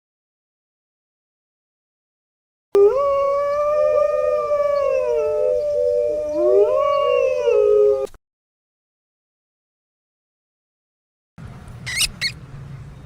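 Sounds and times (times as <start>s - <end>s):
dogs howling: 2.8s - 8.1s.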